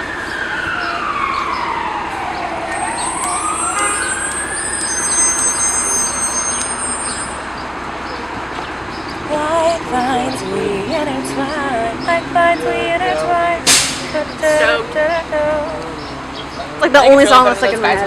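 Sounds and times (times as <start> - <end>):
emergency siren wailing: 0.0 - 7.5, 9.2 - 18.0
street noise: 0.0 - 18.0
high-pitched squeal: 2.6 - 7.6.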